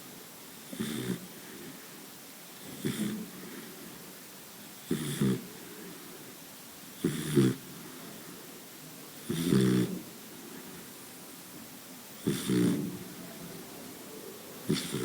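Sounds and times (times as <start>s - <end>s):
dog snoring: 0.6s - 1.8s, 2.6s - 3.9s, 4.8s - 6.1s, 7.0s - 8.4s, 9.1s - 11.0s, 12.2s - 15.0s.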